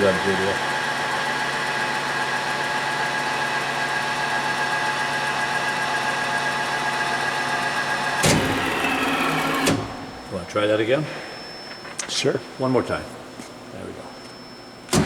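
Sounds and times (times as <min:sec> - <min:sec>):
drilling machine motor hum: 0:00.0 - 0:10.4
spindle whine: 0:00.0 - 0:13.2
machine knock: 0:08.2 - 0:10.2.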